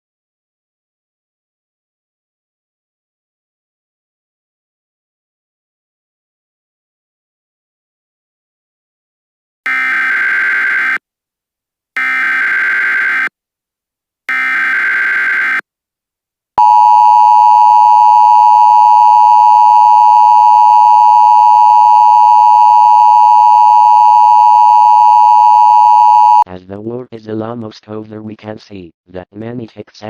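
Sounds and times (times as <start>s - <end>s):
two-tone attention signal: 16.6s - 26.4s
warbling digital data tones: 16.6s - 26.4s.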